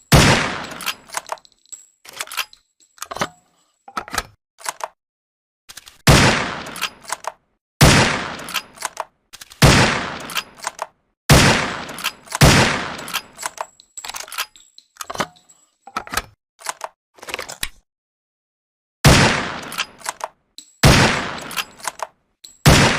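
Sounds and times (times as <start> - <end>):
rifle shots with ringing tail: 0.1 - 0.9, 7.8 - 8.6, 20.8 - 21.6, 22.7 - 22.9
rifle action clicks: 6.6 - 7.4, 8.4 - 9.6, 19.6 - 20.4, 21.4 - 22.1.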